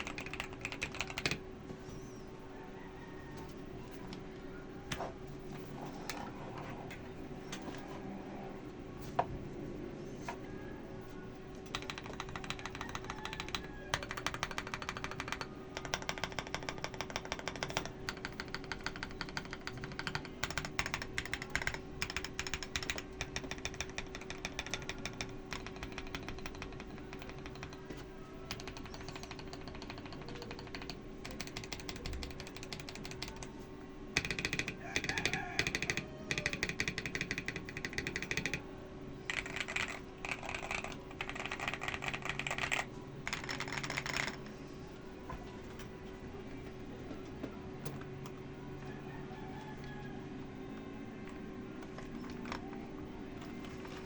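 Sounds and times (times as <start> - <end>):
mechanical keyboard typing: 0.0 - 1.4, 11.5 - 33.5, 34.2 - 38.6, 39.3 - 44.5, 50.7 - 52.8.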